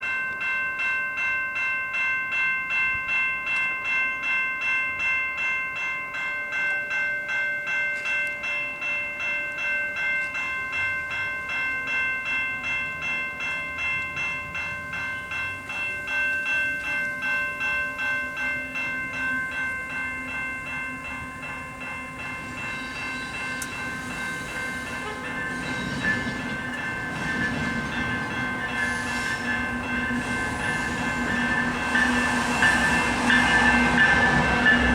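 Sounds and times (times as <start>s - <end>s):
railway bell ringing: 0.0s - 34.9s
train rolling noise: 9.9s - 34.9s
diesel train engine drone: 17.6s - 34.9s.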